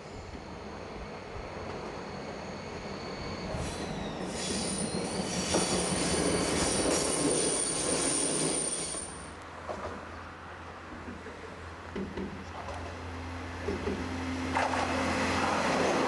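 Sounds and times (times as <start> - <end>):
high-pitched train wheel squeal: 0.0 - 9.4
train running gear rumble: 0.2 - 10.2.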